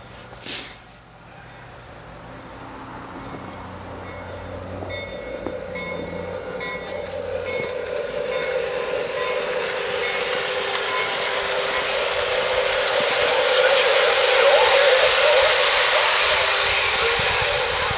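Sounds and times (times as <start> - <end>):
track noise: 1.2 - 17.9
model train motor hum: 2.6 - 17.9
short high tones: 4.0 - 16.4.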